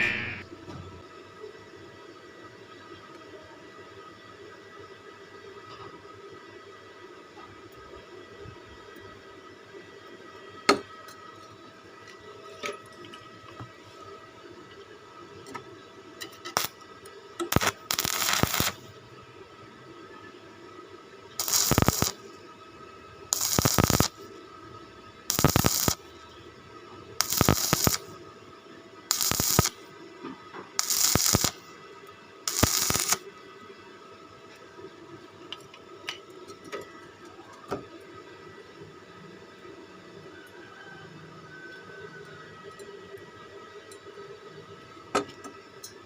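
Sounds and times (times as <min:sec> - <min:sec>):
arc welding bursts: 0:00.0 - 0:00.4, 0:17.4 - 0:18.8, 0:21.4 - 0:22.2, 0:23.3 - 0:24.2, 0:25.3 - 0:26.0, 0:27.2 - 0:28.1, 0:29.1 - 0:29.8, 0:30.8 - 0:31.6, 0:32.5 - 0:33.2
faint steady hum: 0:00.0 - 0:46.0.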